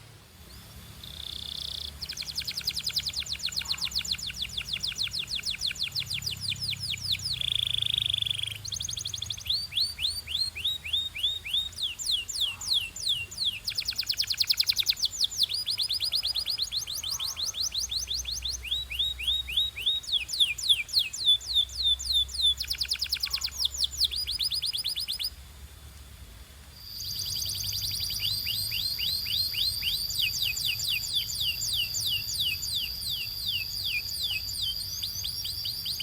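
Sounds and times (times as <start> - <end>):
canary singing trills: 0.4 - 25.4, 26.8 - 36.0
held whistle: 26.8 - 36.0.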